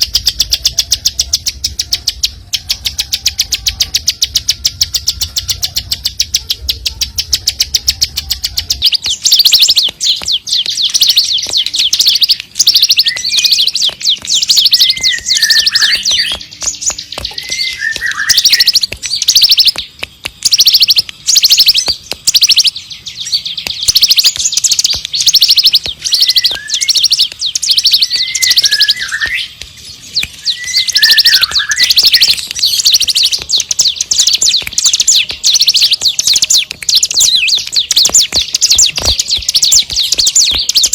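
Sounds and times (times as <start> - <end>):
bird singing rapid chips: 0.0 - 40.9
bird down-slurred whistles: 10.8 - 19.8, 20.5 - 29.5, 30.3 - 40.9.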